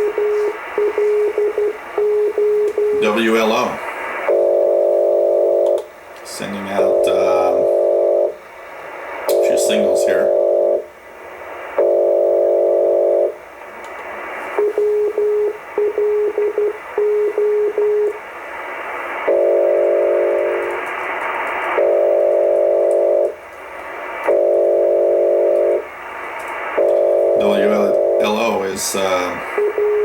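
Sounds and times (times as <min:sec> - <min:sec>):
radio band hiss: 0:00.0 - 0:02.0, 0:02.9 - 0:04.8, 0:05.9 - 0:12.2, 0:13.4 - 0:14.8, 0:16.6 - 0:30.0
morse code tone: 0:00.0 - 0:03.2, 0:14.6 - 0:18.2, 0:24.3 - 0:25.8, 0:26.8 - 0:28.4, 0:29.6 - 0:30.0
steady radio tones: 0:00.0 - 0:30.0.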